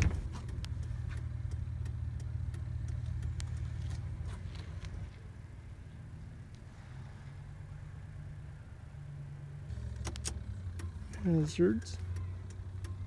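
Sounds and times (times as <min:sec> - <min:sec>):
truck engine idling: 0:00.0 - 0:13.0
turn signal clicking: 0:00.2 - 0:04.2, 0:09.8 - 0:13.0.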